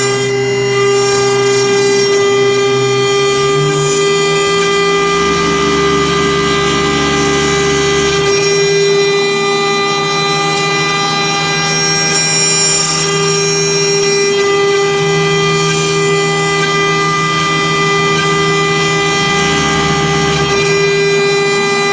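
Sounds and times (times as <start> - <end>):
cnc router whining: 0.0 - 21.9.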